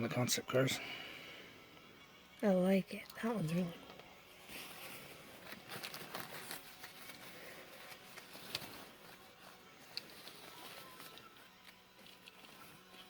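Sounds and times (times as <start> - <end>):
packaging rustling: 4.6 - 13.0.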